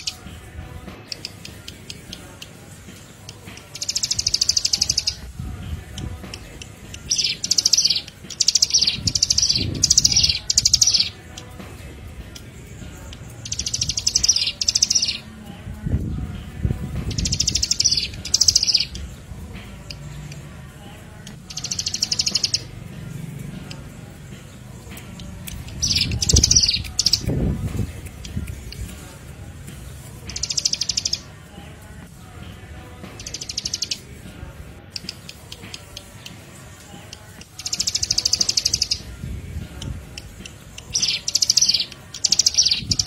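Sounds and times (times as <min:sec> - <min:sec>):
bird ticking trills: 0:00.0 - 0:00.3, 0:01.0 - 0:11.6, 0:12.3 - 0:15.3, 0:17.1 - 0:22.8, 0:23.6 - 0:29.0, 0:30.2 - 0:31.3, 0:33.2 - 0:34.2, 0:34.9 - 0:43.0.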